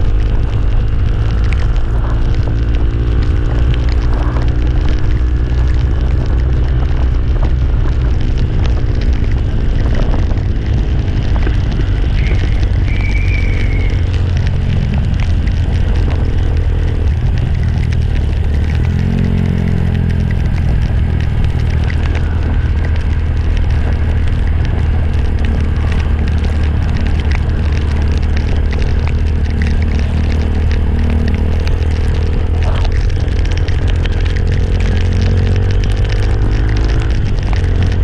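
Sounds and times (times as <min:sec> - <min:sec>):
motorcycle engine running: 0:00.0 - 0:38.0
wind noise on microphone: 0:00.0 - 0:38.0.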